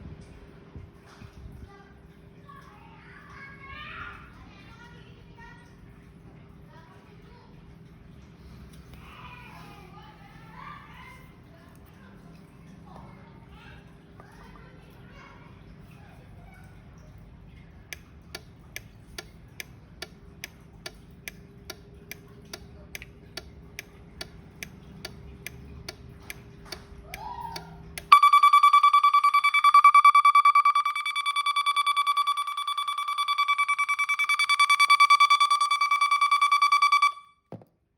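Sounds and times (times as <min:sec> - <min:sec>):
timer ticking faintly: 0:17.8 - 0:37.2
high-pitched buzzer alarm: 0:28.1 - 0:37.3.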